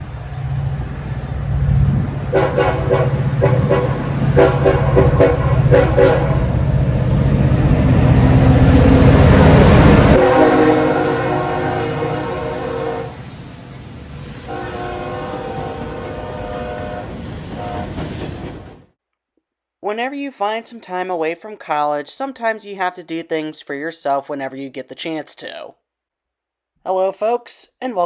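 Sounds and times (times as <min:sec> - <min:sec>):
train rumbling: 0:00.0 - 0:18.9
locomotive horn blasts: 0:02.3 - 0:06.7, 0:09.6 - 0:13.2, 0:14.5 - 0:18.0.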